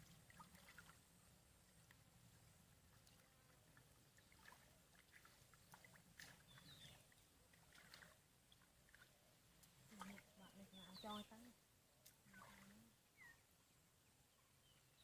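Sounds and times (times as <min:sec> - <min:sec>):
small water sounds: 0:00.0 - 0:15.0
faint high chirp: 0:06.4 - 0:07.2, 0:12.3 - 0:13.5.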